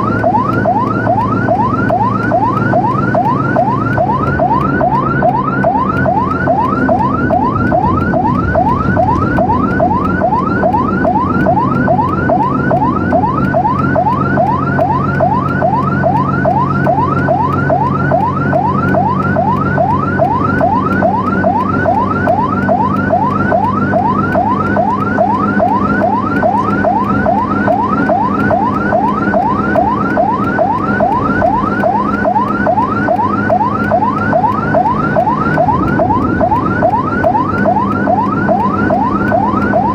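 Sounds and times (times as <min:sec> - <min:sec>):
siren yelping: 0:00.0 - 0:39.9
steady low drone: 0:00.0 - 0:39.9.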